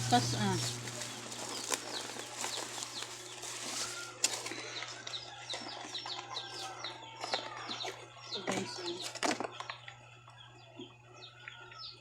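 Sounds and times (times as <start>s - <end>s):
steady low hum: 0.0s - 3.5s
small birds chirping: 0.0s - 12.0s.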